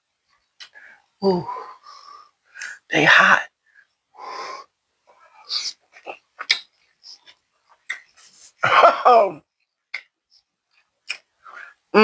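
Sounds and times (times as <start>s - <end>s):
wet lip smacks and chewing clicks: 11.0s - 11.3s.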